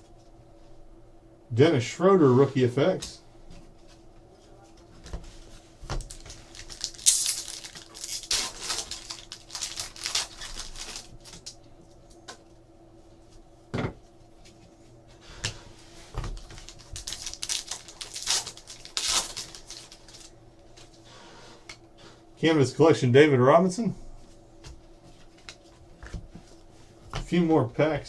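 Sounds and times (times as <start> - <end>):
cards shuffling rustles: 5.0 - 11.5, 15.4 - 21.0
wrapper ripping: 6.0 - 11.6, 16.4 - 20.3.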